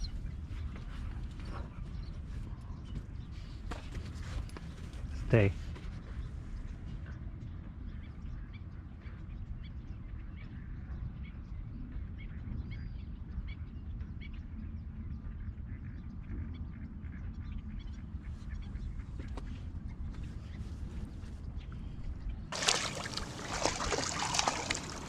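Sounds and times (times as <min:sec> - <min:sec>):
birds chirping: 0:18.2 - 0:25.0
ducks quacking: 0:22.6 - 0:25.0.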